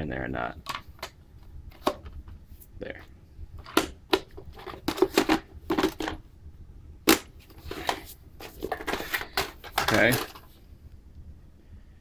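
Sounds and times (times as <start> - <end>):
plastic clicks and knocks: 3.6 - 6.2, 8.6 - 10.5.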